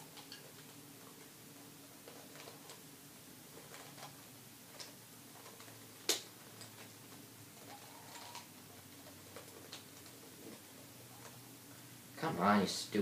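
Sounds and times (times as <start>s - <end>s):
plastic puzzle cube clicking: 3.6s - 10.2s.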